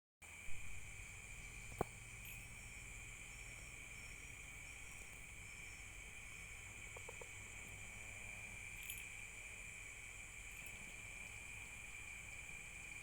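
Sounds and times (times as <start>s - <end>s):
crickets chirping: 0.2s - 13.0s.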